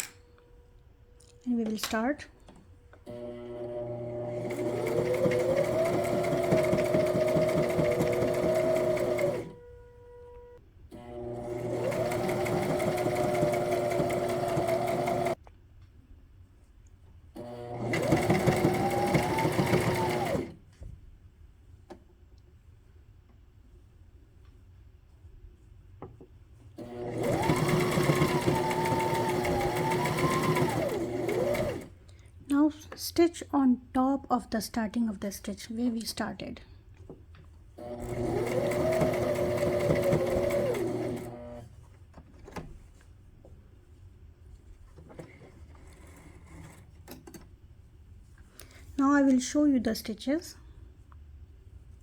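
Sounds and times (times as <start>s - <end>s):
sewing machine motor whining: 3.1s - 9.6s, 11.0s - 15.4s, 17.4s - 20.6s, 26.8s - 31.9s, 37.8s - 41.6s.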